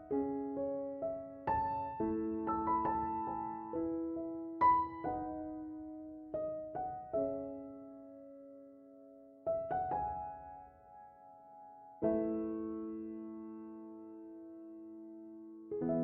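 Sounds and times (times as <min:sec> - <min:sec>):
gentle solo piano: 0:00.0 - 0:16.0.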